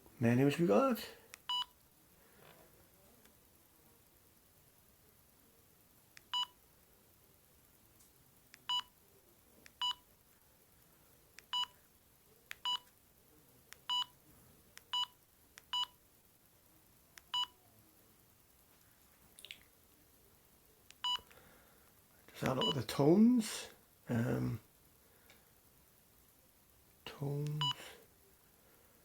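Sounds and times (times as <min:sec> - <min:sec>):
phone keypad beeps: 0:01.5 - 0:01.7.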